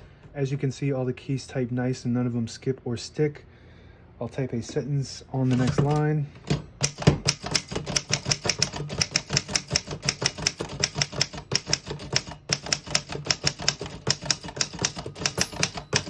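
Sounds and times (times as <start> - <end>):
typewriter typing: 5.5 - 16.0.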